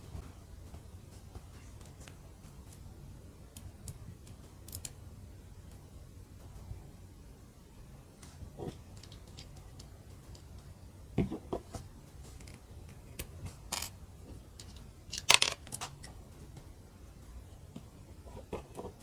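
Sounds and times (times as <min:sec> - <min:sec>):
plastic bricks clicking together: 0:14.6 - 0:16.0.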